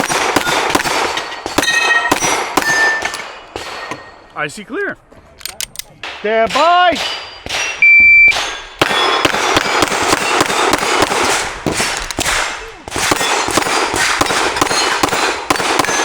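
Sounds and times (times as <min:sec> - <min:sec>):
pistol shots: 0:00.0 - 0:04.2, 0:05.5 - 0:16.0
steel plates ringing: 0:00.0 - 0:04.3, 0:06.2 - 0:09.2
shot timer beep: 0:07.8 - 0:08.4.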